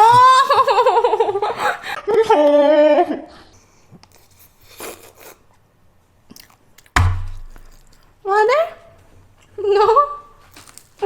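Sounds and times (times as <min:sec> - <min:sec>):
soft crunch: 0:06.3 - 0:08.1, 0:10.4 - 0:11.0.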